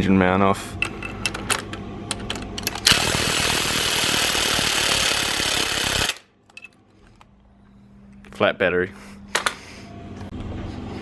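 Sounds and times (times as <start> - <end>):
impact wrench hammering: 2.8 - 6.2.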